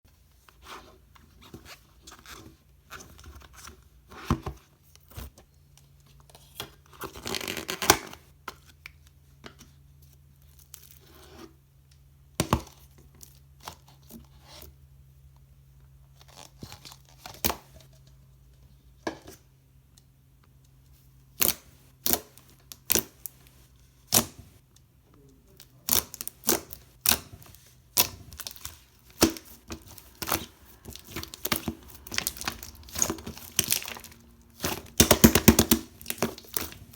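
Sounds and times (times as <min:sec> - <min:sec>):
slime crackling: 0:25.6 - 0:36.9.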